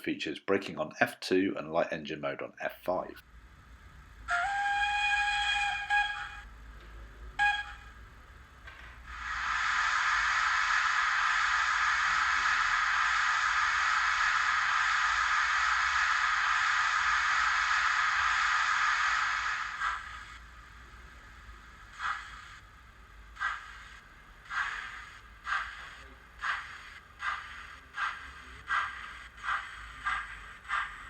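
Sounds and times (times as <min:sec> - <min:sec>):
steam locomotive exhaust chuffs: 0:04.1 - 0:31.0
steam hiss: 0:09.0 - 0:31.0.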